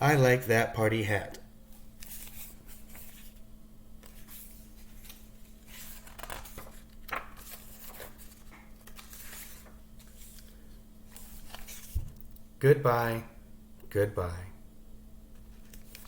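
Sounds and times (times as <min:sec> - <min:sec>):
paper pages rustling: 0:01.7 - 0:03.4, 0:04.0 - 0:12.3, 0:15.3 - 0:16.0.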